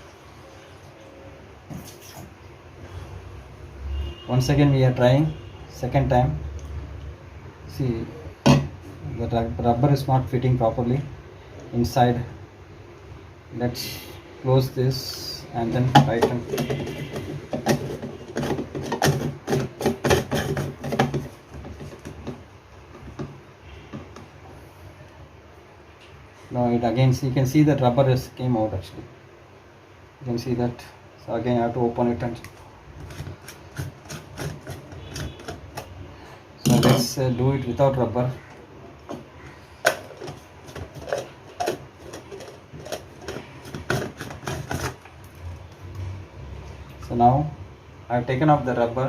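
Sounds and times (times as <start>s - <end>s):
lid twisting clicks and knocks: 15.9s - 22.4s, 32.5s - 35.9s, 39.1s - 45.1s
mixer grinder jar clicks and knocks: 16.0s - 22.4s.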